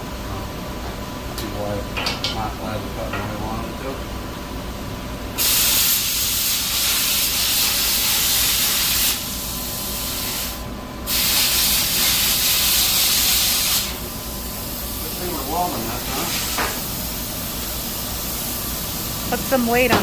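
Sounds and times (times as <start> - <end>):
plasma cutter hissing: 5.4 - 20.0.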